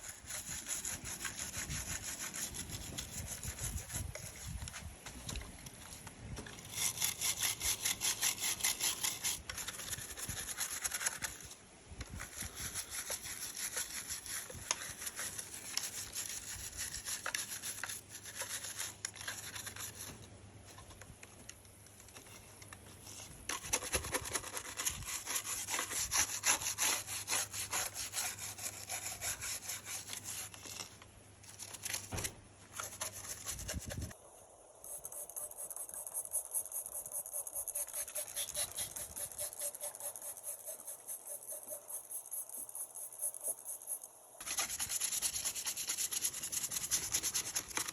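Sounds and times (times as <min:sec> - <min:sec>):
scrubbing strokes on plastic: 0:12.2 - 0:20.2.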